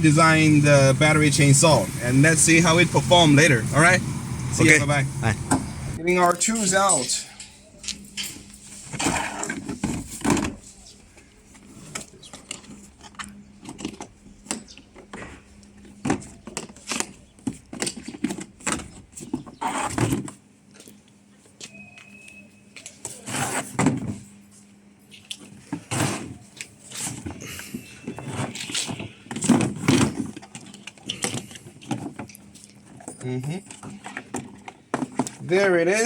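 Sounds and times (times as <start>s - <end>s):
steady low hum: 0.0s - 6.0s.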